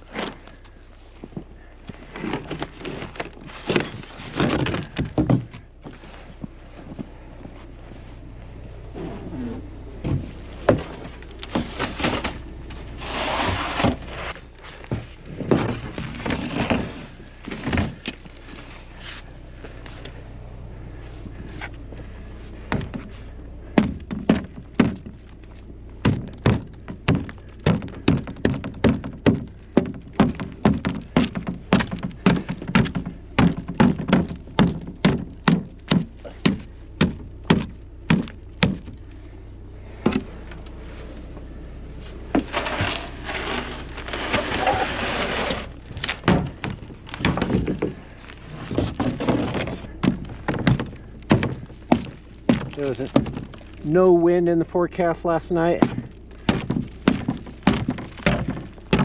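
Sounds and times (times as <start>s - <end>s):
sharp wooden knocks and thuds: 0.0s - 7.2s, 10.0s - 18.6s, 21.2s - 39.2s, 39.8s - 40.8s, 42.3s - 54.4s, 55.0s - 59.0s
rushing scraping noise: 8.9s - 23.3s, 42.0s - 50.4s.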